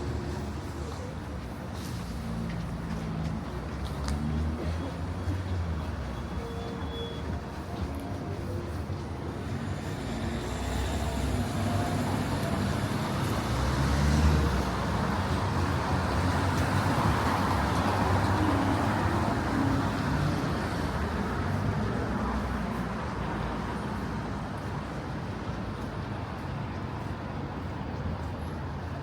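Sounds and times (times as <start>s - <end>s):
vehicle passing: 7.3s - 21.6s.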